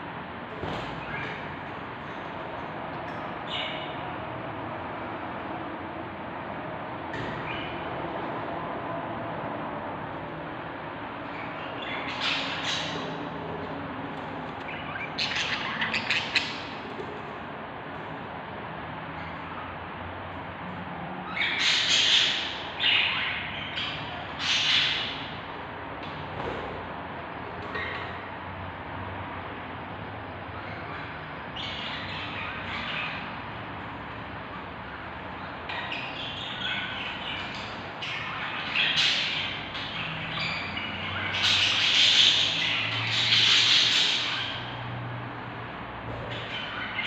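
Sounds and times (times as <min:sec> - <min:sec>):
budgerigar chicks squawking: 0:14.6 - 0:16.9.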